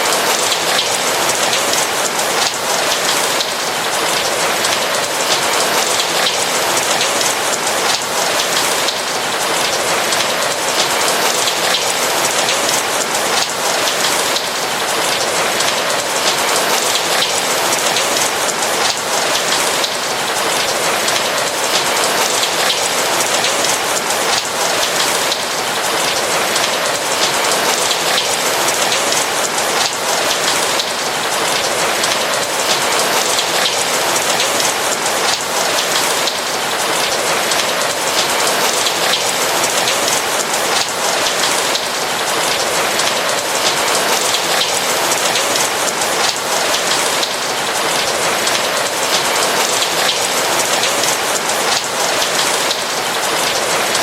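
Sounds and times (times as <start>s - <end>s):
rain pattering on a roof: 0.0s - 54.0s.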